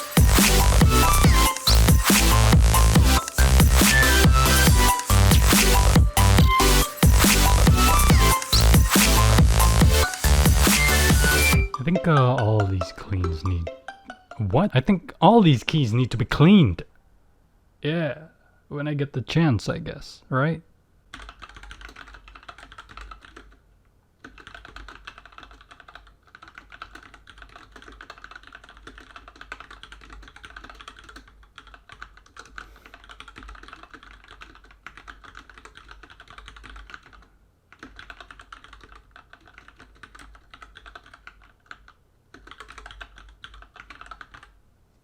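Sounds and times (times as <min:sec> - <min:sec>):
typing on a mechanical keyboard: 0:21.1 - 0:23.6, 0:24.2 - 0:44.6.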